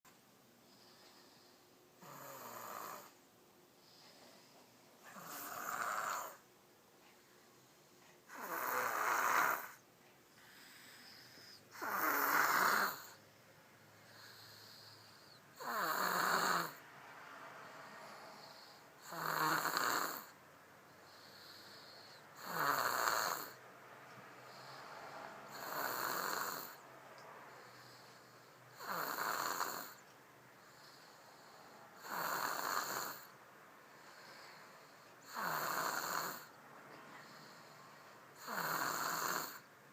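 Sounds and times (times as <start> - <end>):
baby snoring: 0.7 - 3.2, 4.0 - 6.4, 8.2 - 9.8, 10.4 - 13.2, 14.0 - 16.8, 17.6 - 20.4, 21.0 - 23.6, 24.4 - 26.8, 27.6 - 30.0, 30.6 - 36.6, 37.2 - 39.7.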